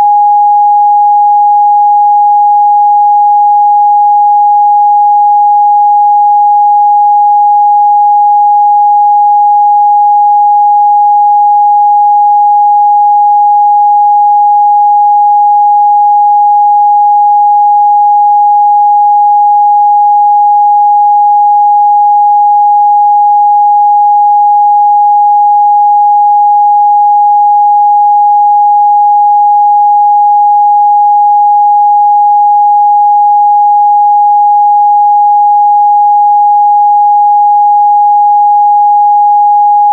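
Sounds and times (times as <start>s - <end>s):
steady sine test tone: 0.0s - 39.9s.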